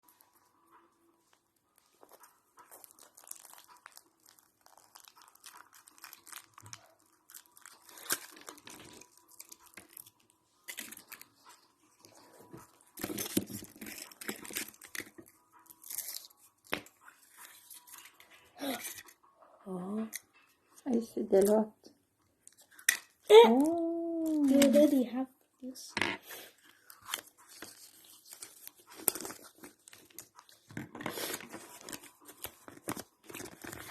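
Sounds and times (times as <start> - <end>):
wrapper crinkling and tearing: 1.8 - 19.0, 22.5 - 25.0, 26.6 - 33.9.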